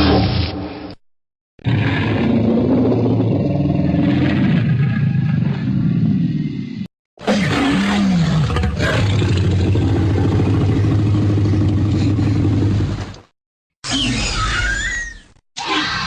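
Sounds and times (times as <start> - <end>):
cartoon dinosaur roar: 1.6 - 13.0.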